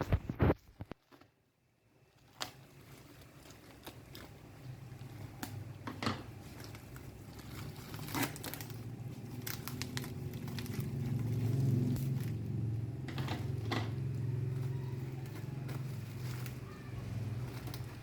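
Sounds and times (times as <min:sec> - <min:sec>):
handling clicks and crackles: 0:02.1 - 0:18.0
low hum: 0:06.6 - 0:16.6.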